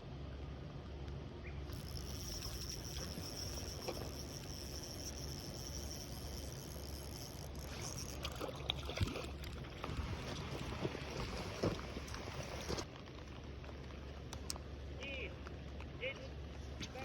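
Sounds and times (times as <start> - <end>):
water splashing and lapping: 1.7 - 12.9.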